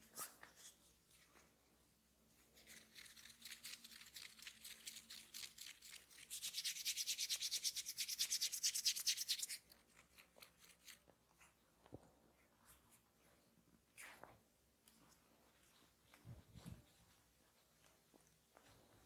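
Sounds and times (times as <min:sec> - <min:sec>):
hands rubbing over hair: 0:05.6 - 0:09.6.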